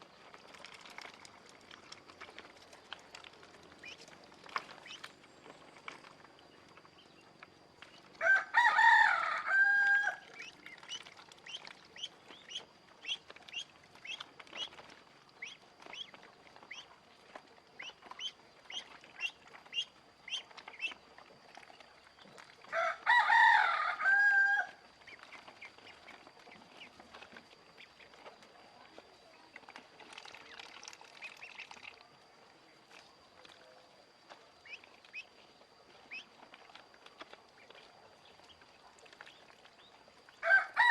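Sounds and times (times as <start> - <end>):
ducklings peeping: 0.2 - 22.6, 24.4 - 32.0, 32.8 - 40.9
rooster crowing: 8.2 - 10.3, 22.7 - 24.8, 40.4 - 40.9.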